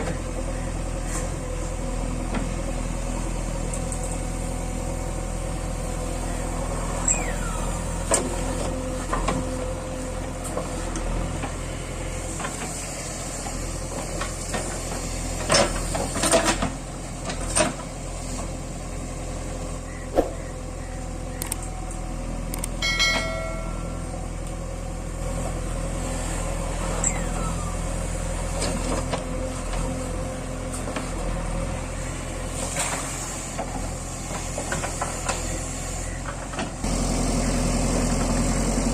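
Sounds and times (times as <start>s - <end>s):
diesel engine running: 0.0s - 38.9s
sharp metal knocks and clanks: 22.8s - 24.0s
short pitched tone: 22.8s - 24.2s.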